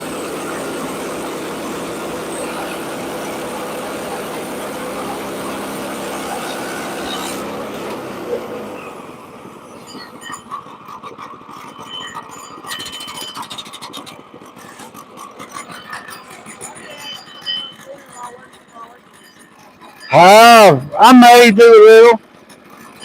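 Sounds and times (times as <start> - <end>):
bandsaw mill sawing log: 0.0 - 23.0.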